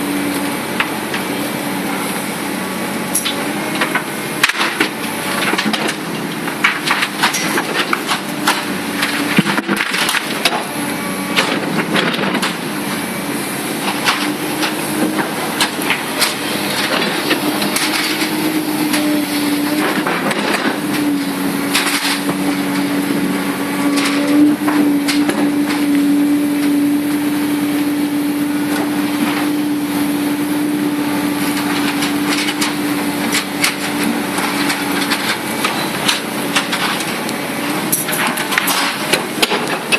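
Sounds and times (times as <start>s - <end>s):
excavator engine humming: 0.0s - 39.9s
knocks clanks and crunching: 3.0s - 39.9s.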